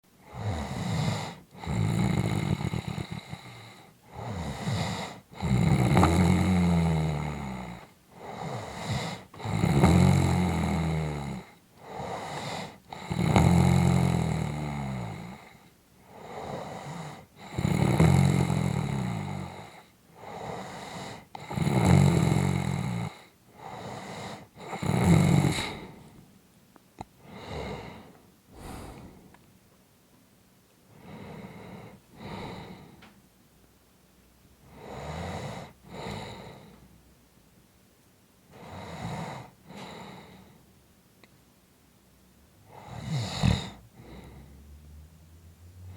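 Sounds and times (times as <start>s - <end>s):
person snoring: 0.3s - 26.0s, 27.3s - 29.3s, 42.7s - 45.0s
weak breathing: 27.2s - 29.4s, 42.7s - 45.0s.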